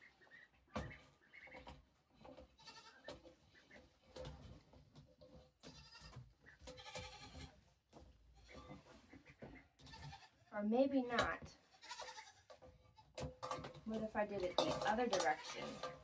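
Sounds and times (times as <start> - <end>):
knocks and rustling from handling: 0.7 - 10.2, 11.1 - 16.0
goat bleating: 2.6 - 3.1, 5.6 - 7.5, 9.9 - 10.5, 11.6 - 13.1.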